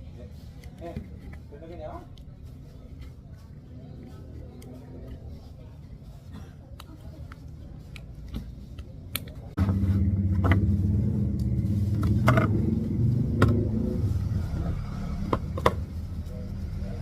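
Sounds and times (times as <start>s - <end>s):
low motor hum: 9.6s - 17.0s.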